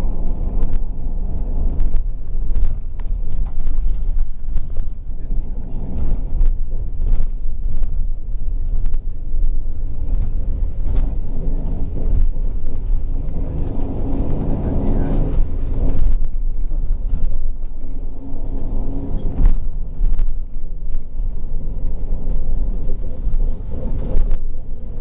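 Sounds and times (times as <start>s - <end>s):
bus engine and road rumble: 0.0s - 25.0s.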